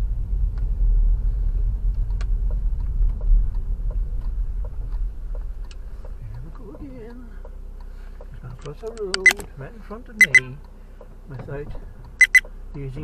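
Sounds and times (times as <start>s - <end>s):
road and engine rumble: 0.0s - 13.0s
faint clicks: 1.9s - 9.5s.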